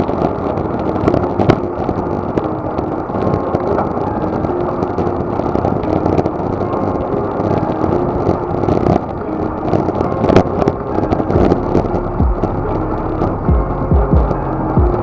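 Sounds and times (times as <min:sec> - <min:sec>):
wind rush and road noise: 0:00.0 - 0:15.0
thumping music beat: 0:10.1 - 0:15.0.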